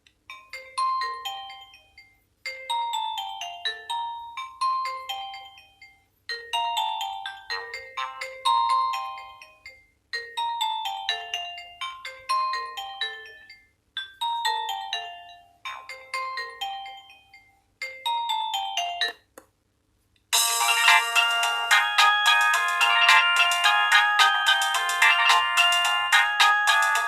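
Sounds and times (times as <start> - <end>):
phone ringtone melody: 0.3 - 19.2, 20.4 - 27.0
busier phone ringtone: 20.4 - 27.0.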